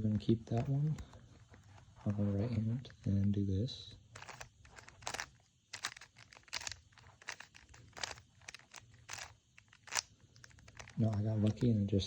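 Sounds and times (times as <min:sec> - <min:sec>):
plastic cube clicks and scrapes: 0:04.2 - 0:11.7.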